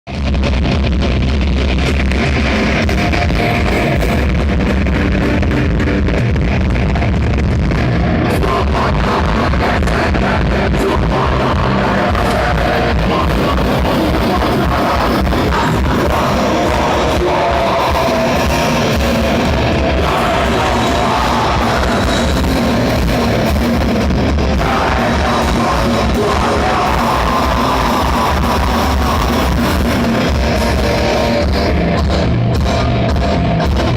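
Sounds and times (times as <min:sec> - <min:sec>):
bass guitar: 0:00.0 - 0:33.9
distorted electric guitars: 0:00.0 - 0:33.9
drum kit: 0:00.1 - 0:33.9
person singing or shouting: 0:08.3 - 0:23.6, 0:24.4 - 0:31.4.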